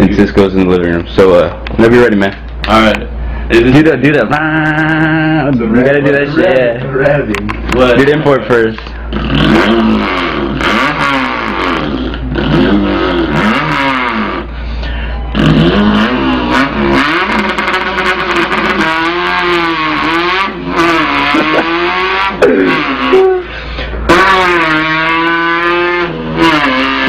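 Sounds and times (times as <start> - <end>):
man imitating car engine revving: 3.5 - 6.7, 9.0 - 14.6, 15.3 - 27.0.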